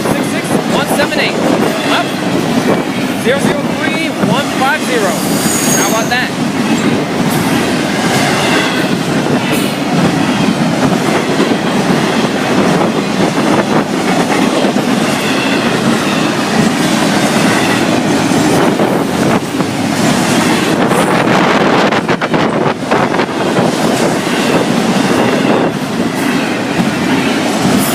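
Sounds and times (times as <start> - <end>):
clickety-clack over rail joints: 0.0 - 27.9
train wheels rumbling on rail: 0.0 - 27.9
wheel squeals: 5.2 - 6.1.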